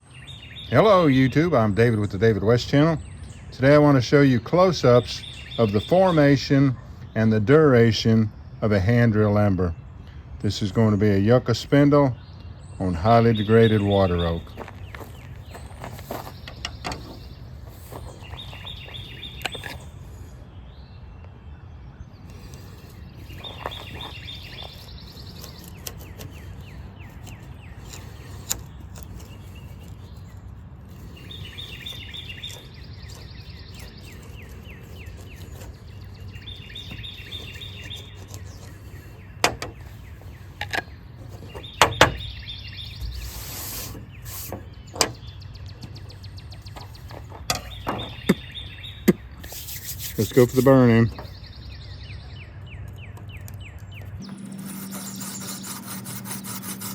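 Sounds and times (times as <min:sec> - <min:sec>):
bird trilling: 0:22.3 - 0:52.3
sharp knocks: 0:41.5 - 0:42.3.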